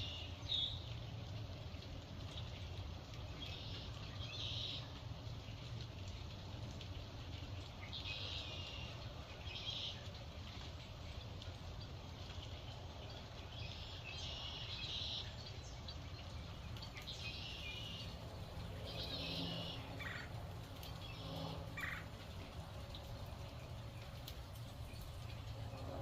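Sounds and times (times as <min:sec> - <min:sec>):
steady low rumble: 0:18.0 - 0:26.0.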